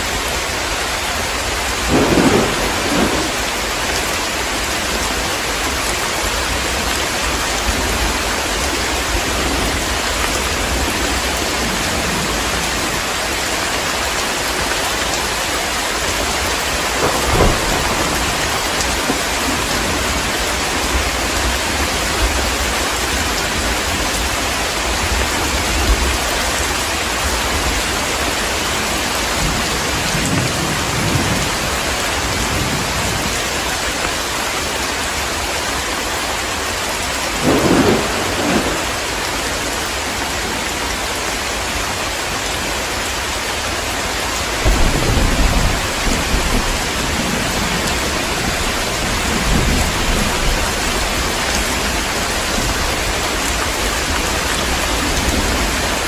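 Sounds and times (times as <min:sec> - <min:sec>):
heavy rain falling: 0:00.0 - 0:56.0
thunder rumbling: 0:01.2 - 0:13.4, 0:16.1 - 0:33.7, 0:37.3 - 0:40.2, 0:44.6 - 0:56.0.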